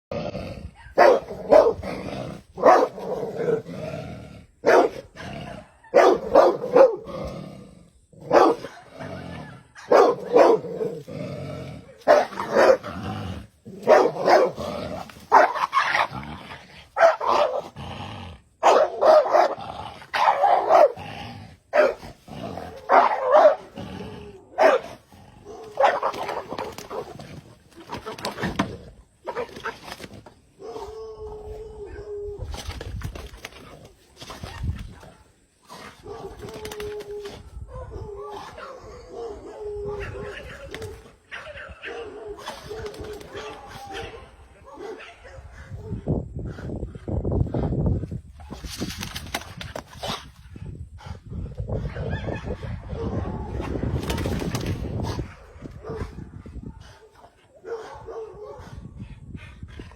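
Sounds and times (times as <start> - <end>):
dog barking: 0.8 - 1.8, 2.6 - 3.0, 4.6 - 7.0, 8.3 - 10.7, 11.9 - 12.9, 13.8 - 14.6, 15.3 - 15.6, 17.0 - 17.6, 18.6 - 19.6, 20.2 - 21.0, 21.7 - 22.0, 22.8 - 23.7, 24.6 - 24.9, 25.5 - 27.1, 41.3 - 46.0, 55.4 - 58.7.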